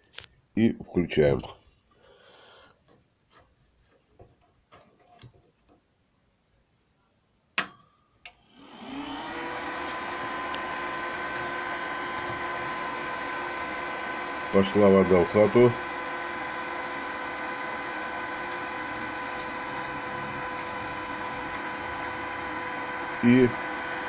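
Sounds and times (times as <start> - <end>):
cooling fan whirring: 7.6 - 24.0
electrical hum: 8.2 - 24.0.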